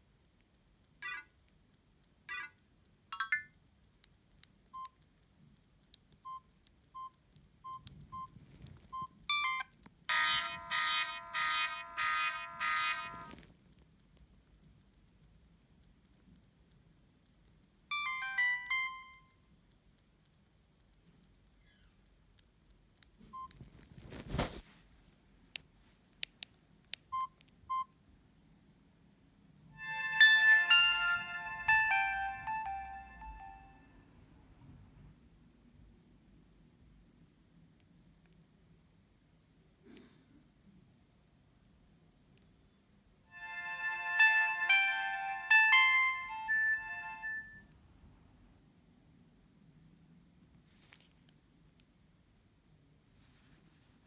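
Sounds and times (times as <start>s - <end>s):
phone chirps: 9.3s - 13.4s, 29.8s - 33.9s, 43.3s - 47.6s
phone ringtone pulses: 9.3s - 13.4s, 29.8s - 33.9s, 43.3s - 47.6s
phone key beeps: 17.9s - 19.3s, 43.8s - 47.6s
phone handling rustle: 23.6s - 24.7s.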